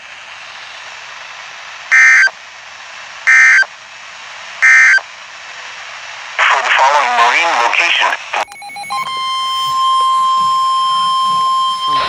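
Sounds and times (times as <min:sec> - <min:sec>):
steady radio hiss: 0:00.0 - 0:08.5
two-tone digital screeches: 0:01.9 - 0:02.3, 0:03.3 - 0:03.7, 0:04.6 - 0:05.0, 0:08.5 - 0:12.0.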